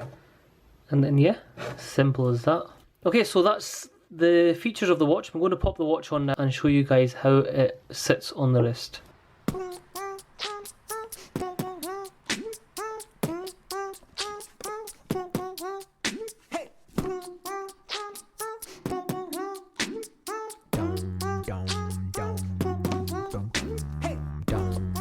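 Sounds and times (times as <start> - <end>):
fast percussive beat: 9.5 - 25.0
pitched vocal-like notes: 9.5 - 25.0
deep bass line: 20.8 - 25.0.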